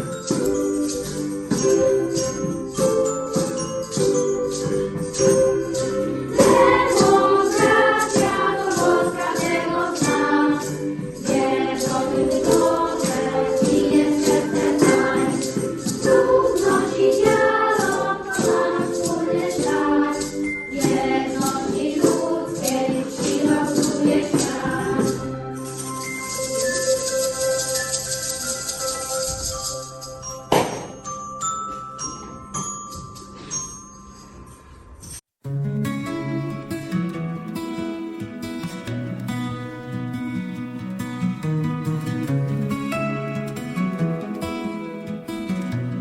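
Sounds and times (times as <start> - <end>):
music with steady beat: 0.0 - 33.4
group of voices singing: 5.7 - 25.4.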